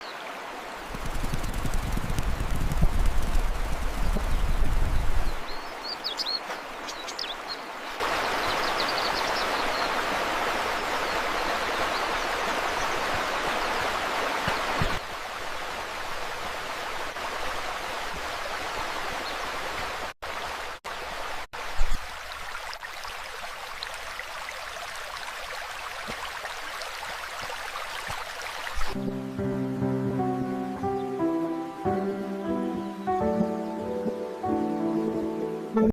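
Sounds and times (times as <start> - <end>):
running water rushing: 0.0 - 35.9.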